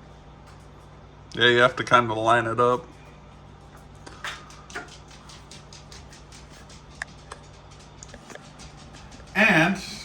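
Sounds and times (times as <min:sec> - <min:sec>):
low steady hum: 0:00.0 - 0:10.0.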